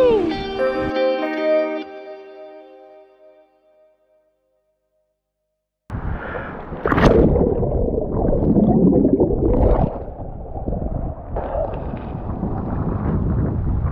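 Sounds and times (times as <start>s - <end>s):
wind rumble on microphone: 5.9s - 13.9s
sharp splash: 6.1s - 10.2s.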